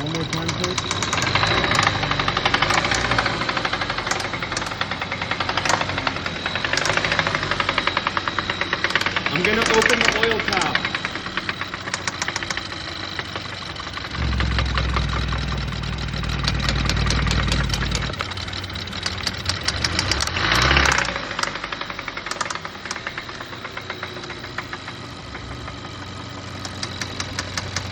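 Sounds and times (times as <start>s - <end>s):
car engine knocking: 0.0s - 27.9s.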